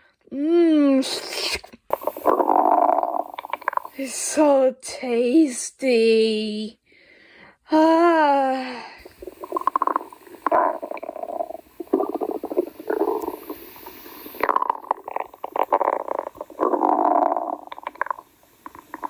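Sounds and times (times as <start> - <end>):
stomach growling: 1.9 - 4.1, 9.0 - 19.0.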